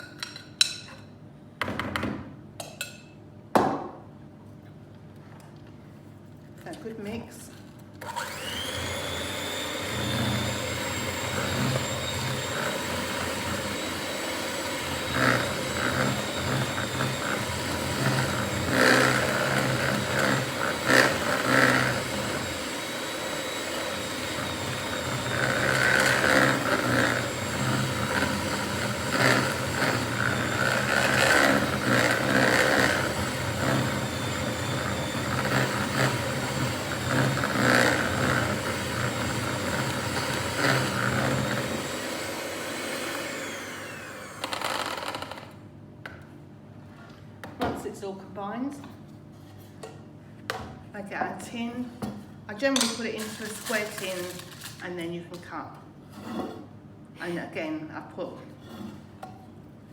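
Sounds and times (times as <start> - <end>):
electric mixer whine: 8.0 - 45.6.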